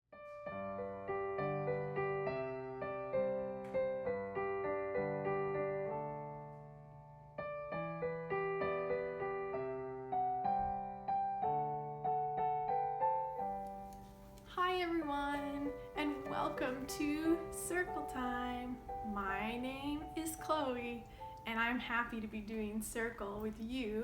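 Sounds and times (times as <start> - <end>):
solo piano music: 0.1 - 24.0.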